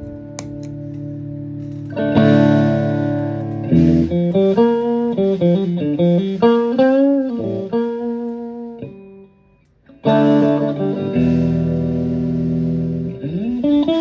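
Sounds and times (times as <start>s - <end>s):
overdriven electric guitar: 0.0s - 14.0s.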